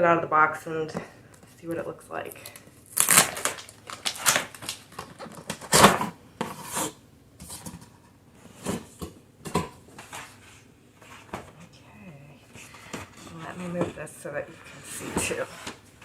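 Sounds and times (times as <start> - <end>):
cardboard box being opened: 3.0 - 6.9.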